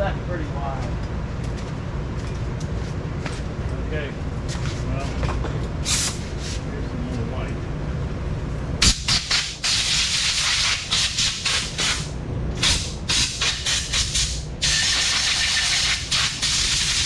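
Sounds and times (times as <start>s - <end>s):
low steady hum: 0.0s - 9.2s
compressed air hissing from spray gun: 5.8s - 6.6s, 8.8s - 17.0s.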